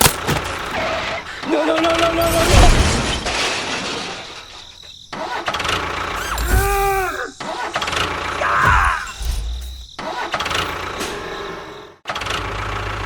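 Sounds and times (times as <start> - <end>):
engine sounds in bursts: 5.4 - 6.8, 7.4 - 13.0.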